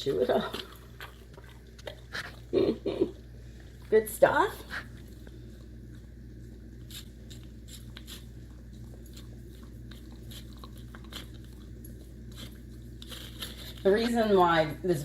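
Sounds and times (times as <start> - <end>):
dog chewing food: 0.0 - 14.6.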